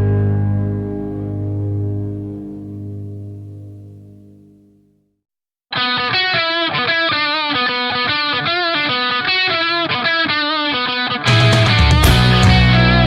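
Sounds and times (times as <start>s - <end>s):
distorted guitar riff: 5.7s - 13.0s
rock band with bass and drums: 11.3s - 13.0s.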